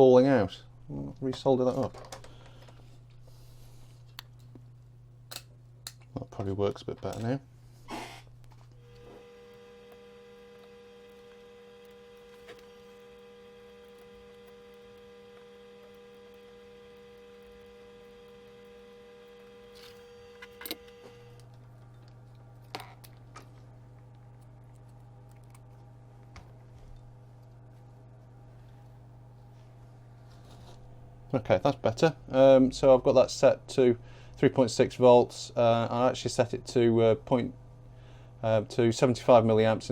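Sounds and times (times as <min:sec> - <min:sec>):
faint electrical hum: 0:00.0 - 0:39.9.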